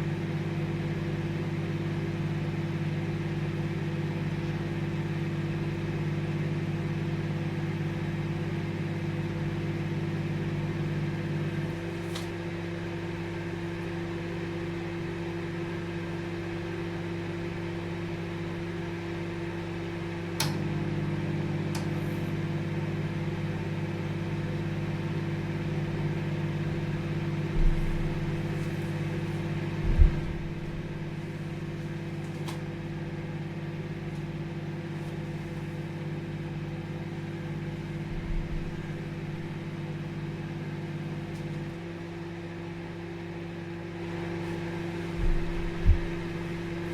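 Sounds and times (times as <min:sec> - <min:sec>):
microwave oven humming: 0:00.0 - 0:46.9
click: 0:20.4 - 0:20.6
short low thumps: 0:27.5 - 0:28.6, 0:29.7 - 0:31.2, 0:38.1 - 0:39.6, 0:45.1 - 0:46.9.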